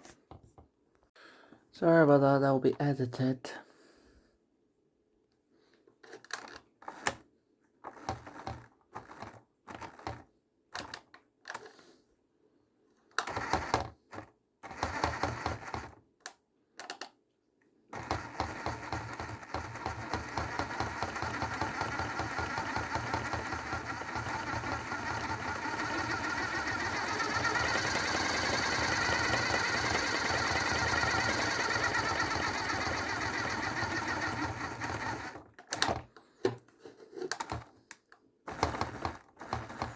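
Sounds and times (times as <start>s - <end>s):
washing machine motor: 18.0s - 35.5s.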